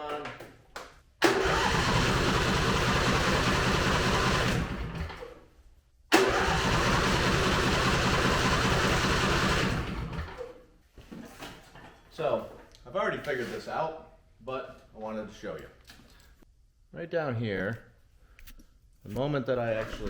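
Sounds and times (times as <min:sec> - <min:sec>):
electric starter cranking engine: 0:01.2 - 0:05.4, 0:06.1 - 0:10.5.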